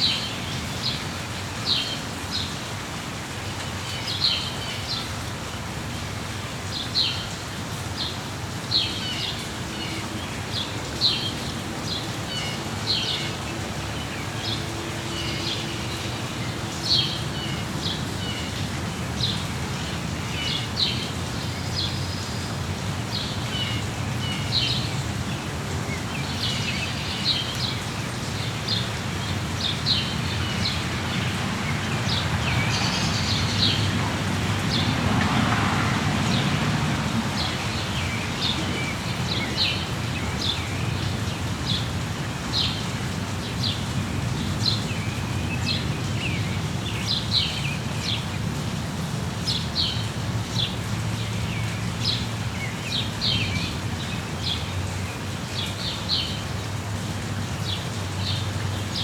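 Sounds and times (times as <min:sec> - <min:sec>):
rain pattering: 0:00.0 - 0:59.0
small birds chirping: 0:37.2 - 0:48.4.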